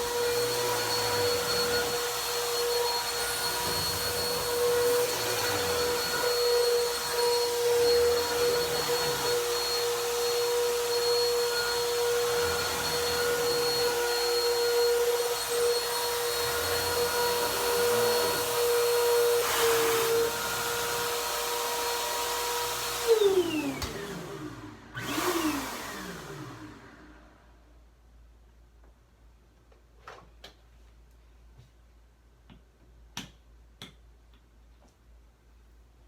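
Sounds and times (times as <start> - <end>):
vacuum cleaner motor whine: 0.0 - 27.6.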